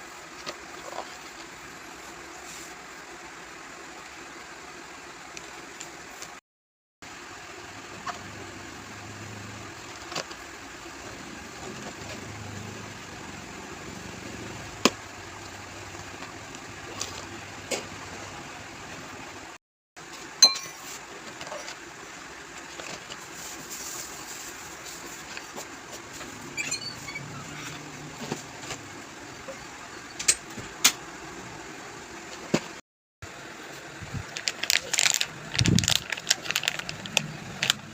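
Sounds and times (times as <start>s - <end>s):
brief ringing clink: 20.4s - 20.8s.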